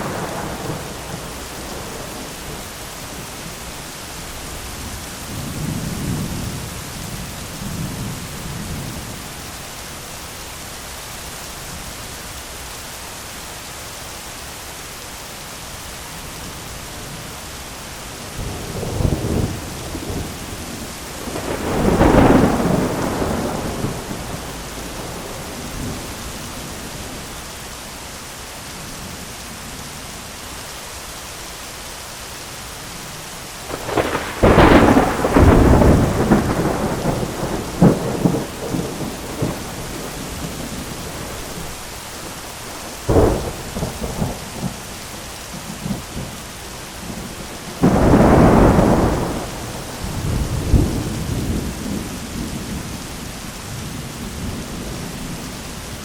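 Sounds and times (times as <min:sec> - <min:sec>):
thunder rumbling: 0:00.0 - 0:09.2, 0:18.4 - 0:27.4, 0:33.6 - 0:56.0
heavy rain on an umbrella: 0:00.0 - 0:56.0
thunder crack: 0:21.2 - 0:26.1, 0:33.7 - 0:41.6, 0:47.8 - 0:52.6.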